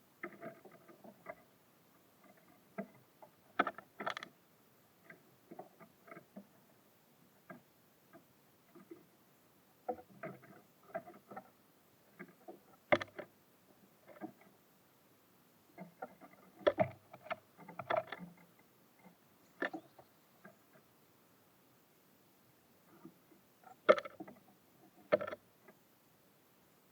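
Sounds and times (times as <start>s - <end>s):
small birds pecking at seed: 15.7s - 20.9s, 22.8s - 25.8s.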